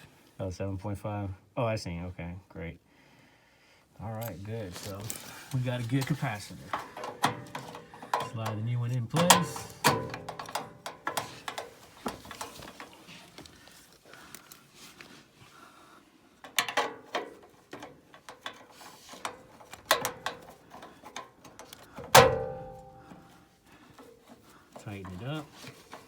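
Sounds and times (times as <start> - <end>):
metal clicks and rattles: 5.9 - 13.6, 16.4 - 23.2, 24.0 - 26.0
loud metallic clank: 22.1 - 23.1.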